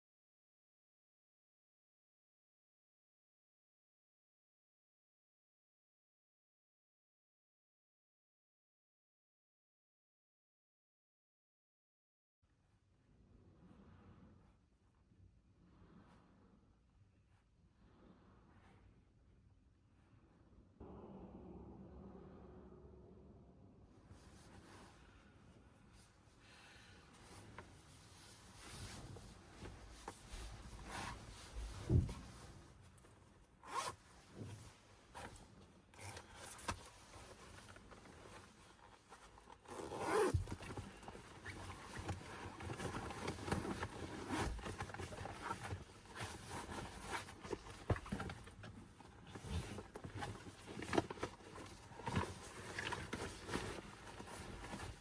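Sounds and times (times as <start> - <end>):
scraping and handling noises: 27.1 - 55.0
zipper being pulled: 33.6 - 34.1, 39.5 - 48.2.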